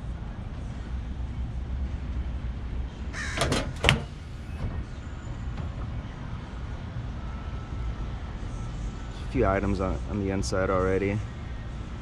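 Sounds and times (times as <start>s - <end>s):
tool box lid creaking: 3.2s - 4.5s
latch clicking: 3.2s - 4.8s.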